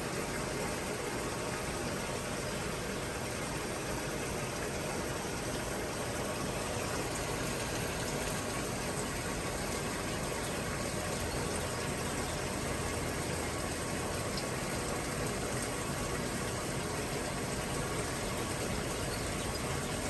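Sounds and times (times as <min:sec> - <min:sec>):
washer filling with water: 0:00.0 - 0:20.0.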